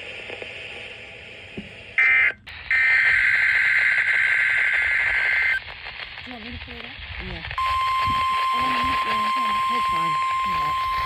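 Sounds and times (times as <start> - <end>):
high-pitched data tone buzzing: 7.6 - 11.0.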